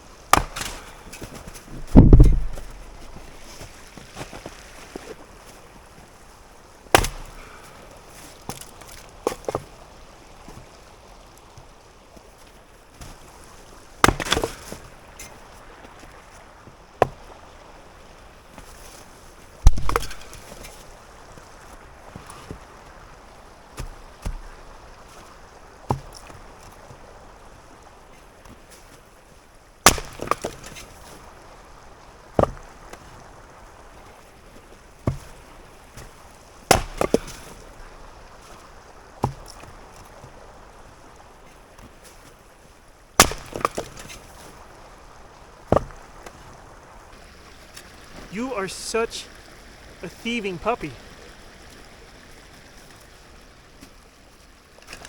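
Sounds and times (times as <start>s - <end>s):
trickling stream: 0.0s - 55.0s
firewood being chopped: 0.2s - 5.2s, 6.9s - 9.8s, 13.0s - 16.0s, 17.0s - 17.6s, 18.6s - 20.9s, 23.7s - 24.9s, 25.9s - 26.6s, 29.8s - 31.7s, 32.3s - 33.3s, 35.0s - 40.1s, 43.2s - 44.8s, 45.4s - 46.6s.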